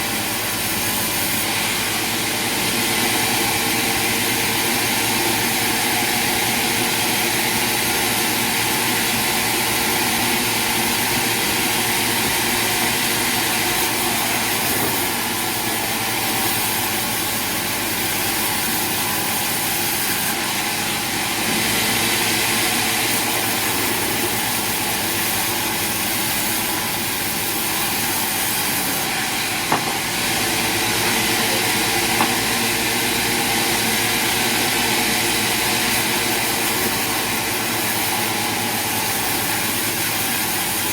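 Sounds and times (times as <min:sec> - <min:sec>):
sawmill machinery drone: 0:00.0 - 0:40.9.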